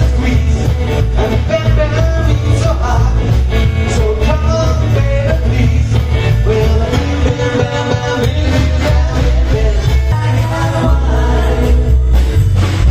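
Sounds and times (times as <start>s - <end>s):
drums keeping steady beat: 0.0s - 12.9s
live rock band playing: 0.0s - 12.9s.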